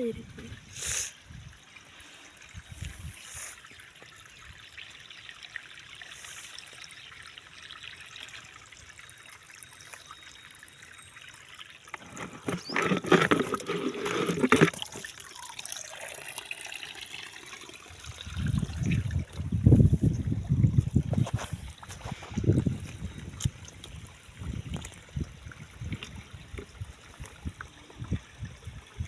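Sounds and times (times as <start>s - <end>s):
stream water trickling: 0.0s - 29.0s
splashing in water: 11.9s - 16.2s.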